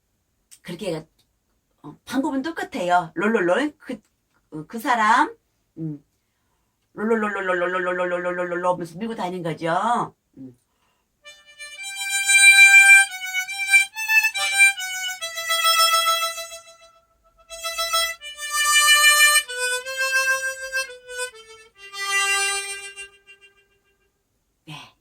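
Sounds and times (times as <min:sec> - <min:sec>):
harmonica playing slow melody: 0:11.2 - 0:24.2.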